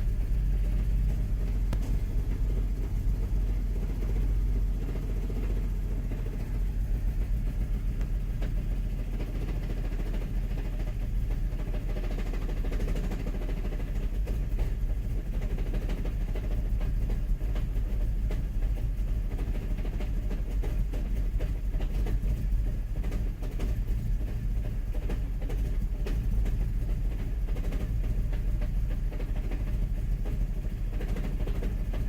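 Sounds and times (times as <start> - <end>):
car engine idling roughly: 0.0 - 32.0.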